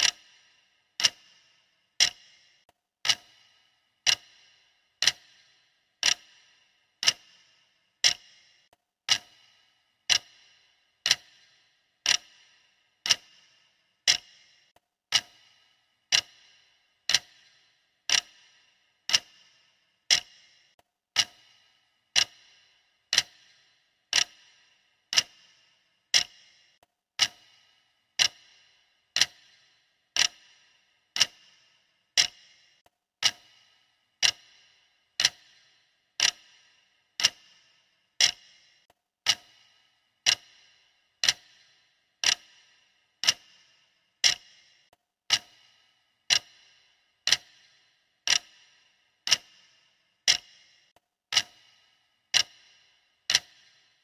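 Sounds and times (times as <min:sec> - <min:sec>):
clock ticking: 0:00.0 - 0:54.0.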